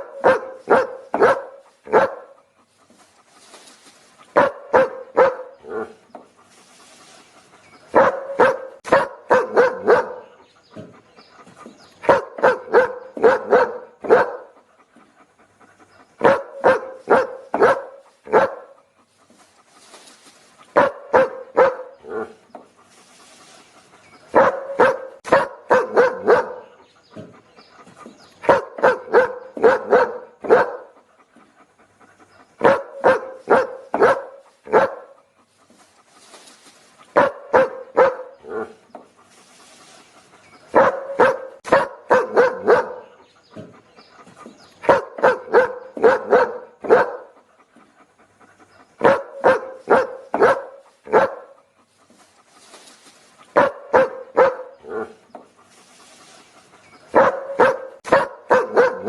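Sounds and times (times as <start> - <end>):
dog barking: 0.0 - 2.4, 4.3 - 6.0, 7.9 - 10.4, 12.0 - 14.6, 16.2 - 18.8, 20.8 - 22.4, 24.3 - 26.8, 28.4 - 31.0, 32.6 - 35.2, 37.1 - 38.8, 40.7 - 43.7, 44.8 - 47.4, 49.0 - 51.6, 53.5 - 55.2, 57.1 - 59.0.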